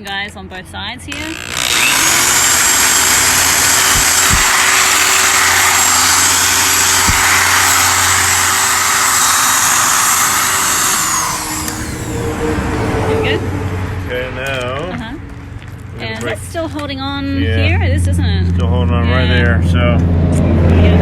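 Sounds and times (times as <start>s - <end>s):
electric drill drilling into plastic: 1.1s - 12.2s.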